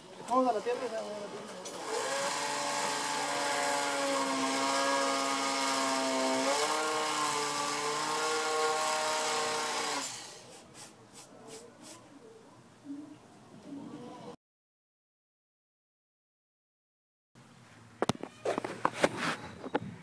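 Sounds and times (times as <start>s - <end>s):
small electric motor humming: 0.5s - 10.4s.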